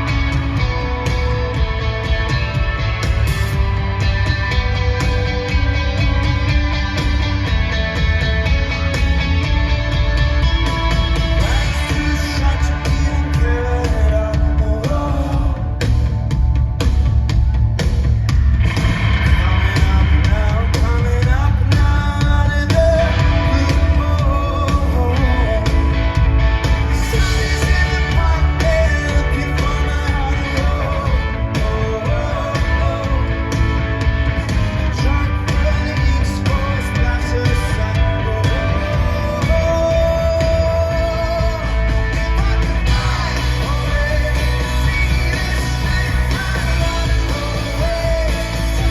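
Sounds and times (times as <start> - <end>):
booming bass: 0.0 - 48.9
rock band playing live: 0.0 - 48.9
person singing: 11.2 - 16.1, 26.8 - 33.8, 34.8 - 48.9.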